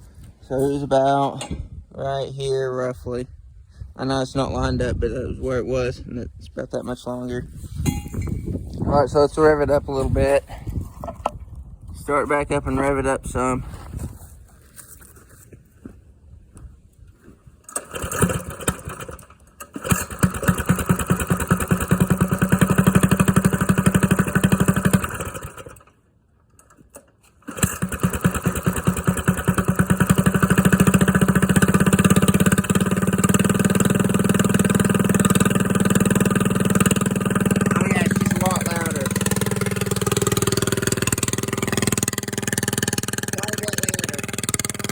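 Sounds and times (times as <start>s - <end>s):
small engine starting and revving: 17.6s - 26.0s, 26.6s - 44.9s.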